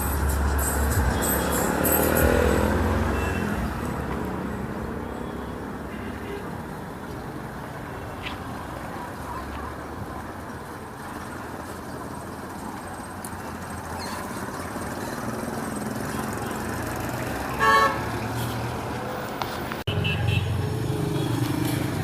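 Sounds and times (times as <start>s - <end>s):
street traffic noise: 0.0s - 22.0s
vehicle horn toot: 0.9s - 3.9s, 17.6s - 18.1s, 19.9s - 20.6s.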